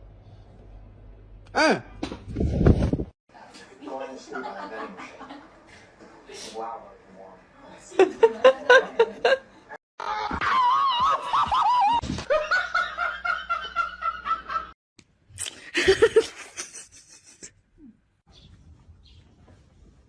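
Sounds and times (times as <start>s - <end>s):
high wavering laughter: 15.8s - 17.5s.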